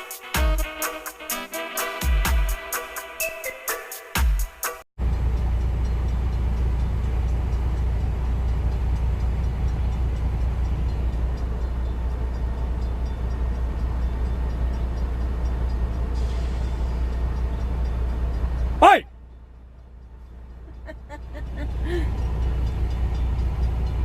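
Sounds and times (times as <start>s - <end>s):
road and cab noise: 0.0s - 3.2s, 4.4s - 24.0s
truck engine hum: 5.0s - 24.0s.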